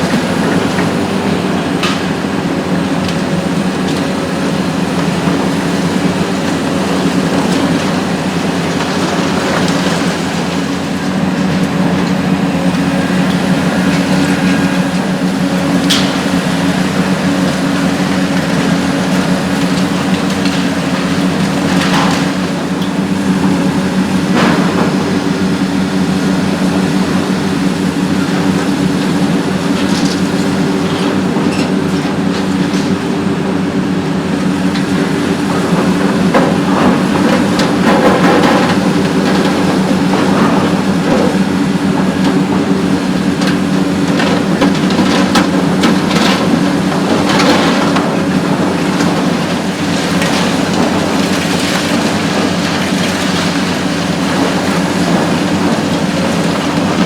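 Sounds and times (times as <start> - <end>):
concrete cracking and clattering: 0.0 - 33.2, 34.5 - 57.0
debris falling: 0.0 - 33.2, 34.2 - 57.0
excavator diesel engine running: 0.0 - 57.0.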